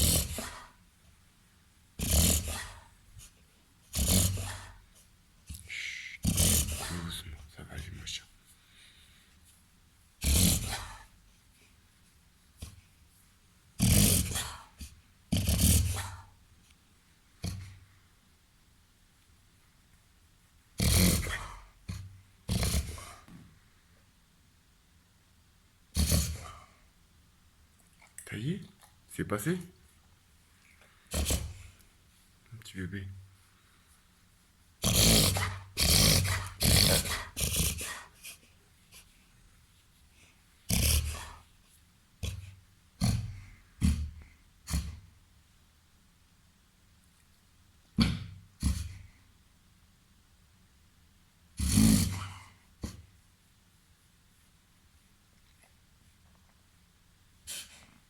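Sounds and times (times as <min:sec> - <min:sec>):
dog reverse sneezing: 0:31.1 - 0:31.7, 0:57.4 - 0:57.9.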